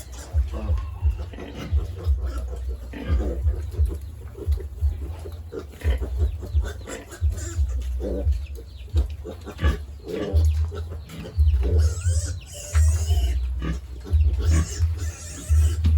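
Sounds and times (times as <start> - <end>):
chickens clucking: 0.0 - 15.9
pigs grunting: 0.0 - 15.9
low rumble: 0.2 - 15.9.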